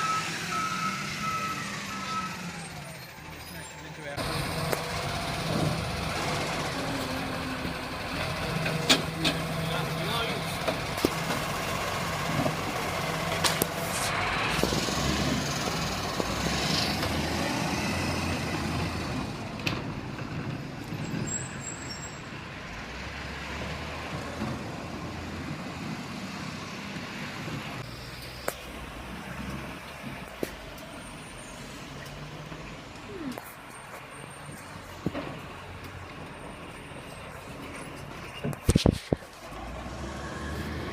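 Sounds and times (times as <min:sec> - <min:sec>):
truck diesel engine running: 0:00.0 - 0:21.0
road noise: 0:00.0 - 0:40.9.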